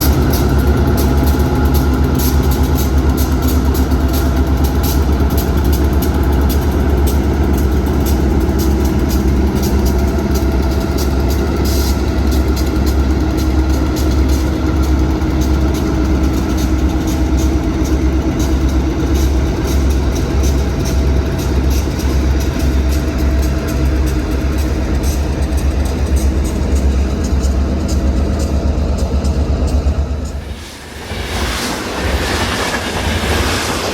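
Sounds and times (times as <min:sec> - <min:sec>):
rhythmic ticking clatter: 0:00.0 - 0:30.6
diesel locomotive engines idling: 0:00.0 - 0:33.9
steady whining tones: 0:29.0 - 0:33.9.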